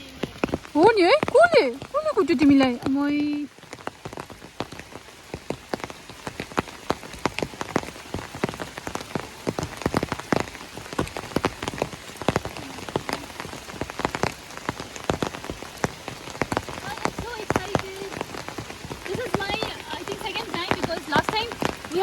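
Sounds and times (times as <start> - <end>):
heavy rain falling: 0.0 - 22.0
large raindrops tapping: 0.0 - 22.0.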